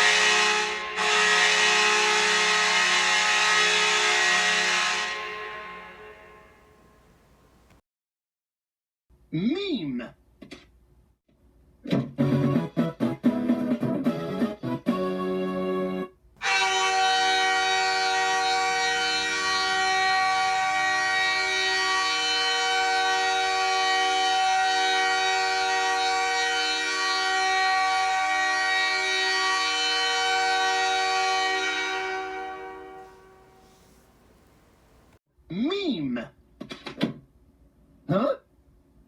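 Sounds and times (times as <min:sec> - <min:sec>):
arena goal horn: 0:00.0 - 0:06.8, 0:16.4 - 0:34.0.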